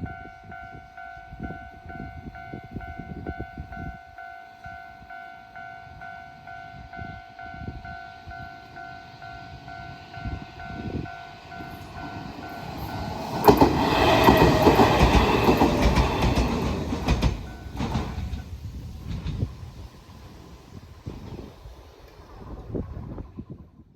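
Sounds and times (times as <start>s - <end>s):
train passing: 0.0s - 23.7s
wheels clicking over rail joints: 11.4s - 22.9s.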